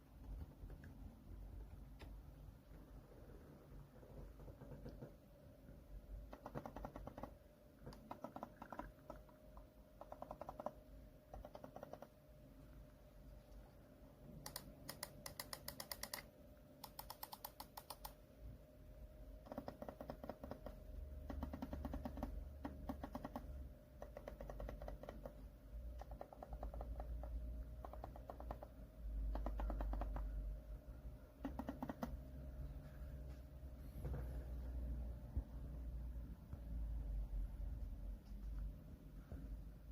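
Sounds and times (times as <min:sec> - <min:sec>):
mechanical keyboard typing: 0:04.4 - 0:05.1, 0:06.2 - 0:12.2, 0:14.4 - 0:18.2, 0:19.4 - 0:30.5, 0:31.4 - 0:32.4.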